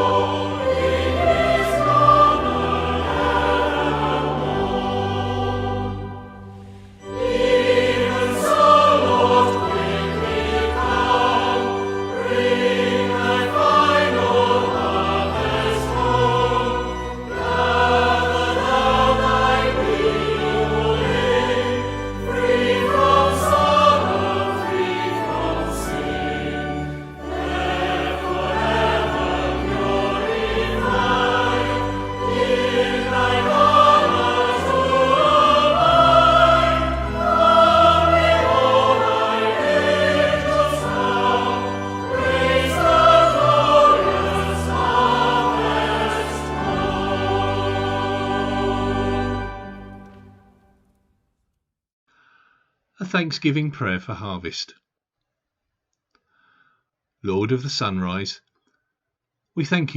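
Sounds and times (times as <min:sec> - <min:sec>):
choir singing a hymn: 0:00.0 - 0:50.6
instrumental accompaniment: 0:00.0 - 0:50.8.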